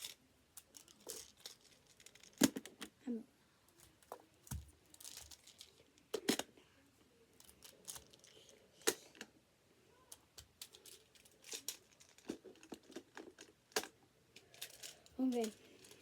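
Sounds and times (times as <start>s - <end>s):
plastic tiles clacking together: 0.0s - 2.9s, 7.4s - 9.2s, 10.1s - 16.0s.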